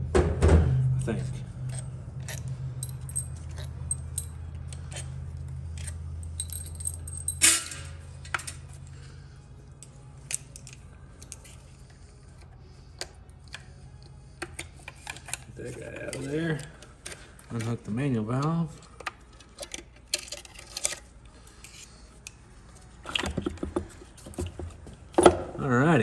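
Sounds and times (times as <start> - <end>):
low steady hum: 0.0 - 26.0
metal tools clinking: 1.0 - 8.7.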